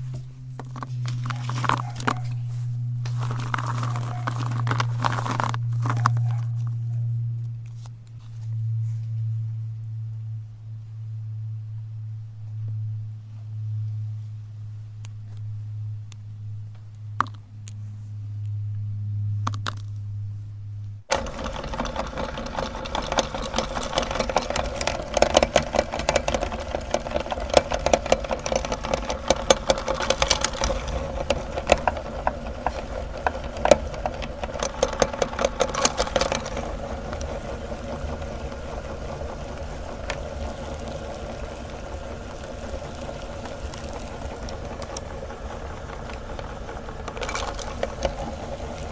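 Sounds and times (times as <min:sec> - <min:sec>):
electric meat grinder motor: 0:00.0 - 0:06.6, 0:21.1 - 0:48.9
chocolate crackling in grinder: 0:00.0 - 0:07.1, 0:21.1 - 0:48.9.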